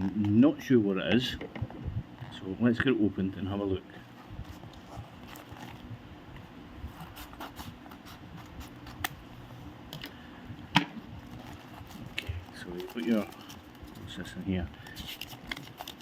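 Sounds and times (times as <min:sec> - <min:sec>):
paper and plastic packaging rustling: 0:04.4 - 0:05.9, 0:11.2 - 0:16.0.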